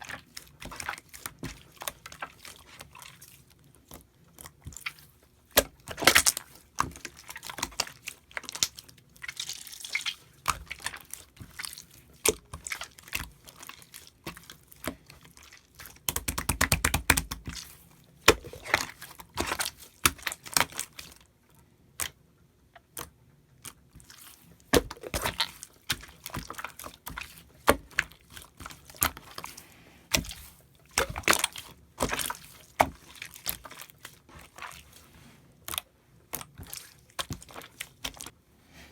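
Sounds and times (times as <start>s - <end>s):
slime squelching: 0.0s - 22.2s, 22.8s - 38.9s.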